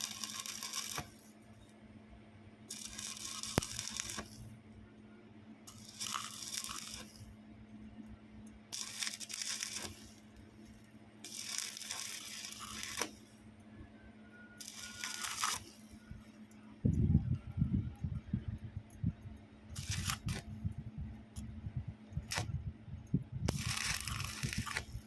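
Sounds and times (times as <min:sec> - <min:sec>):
welding arc crackling: 0:00.0 - 0:01.4, 0:02.7 - 0:04.6, 0:05.7 - 0:07.4, 0:08.7 - 0:13.4, 0:14.6 - 0:17.3, 0:18.8 - 0:21.5, 0:22.1 - 0:22.6, 0:23.5 - 0:25.0
faint steady hum: 0:00.0 - 0:25.0.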